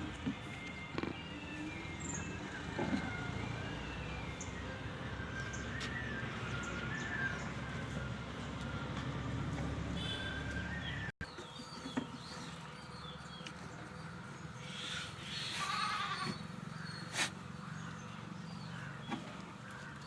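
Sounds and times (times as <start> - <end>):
goat bleating: 15.3 - 16.4.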